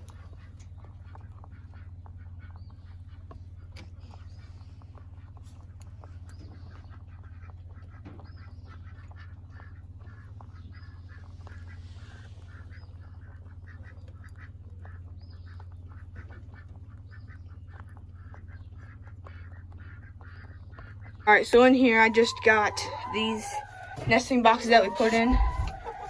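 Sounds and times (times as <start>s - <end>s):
ducks quacking: 6.8s - 26.0s.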